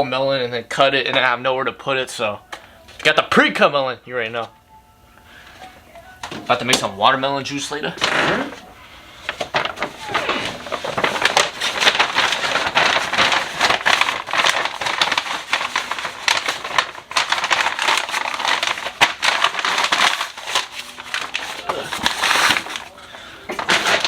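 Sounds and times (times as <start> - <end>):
plastic packaging crinkling: 6.0 - 24.0.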